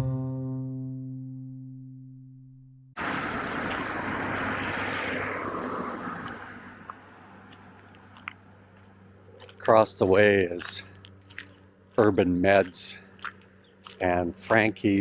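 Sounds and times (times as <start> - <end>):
aircraft passing: 3.0 - 15.0.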